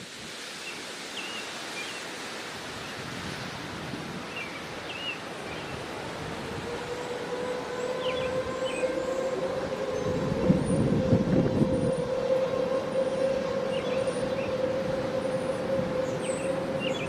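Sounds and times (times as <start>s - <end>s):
wind rushing: 5.8s - 17.0s.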